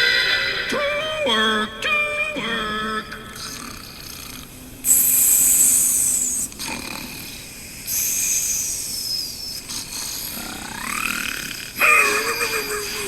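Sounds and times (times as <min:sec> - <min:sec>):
cartoon snoring with whistle: 0:03.4 - 0:13.0.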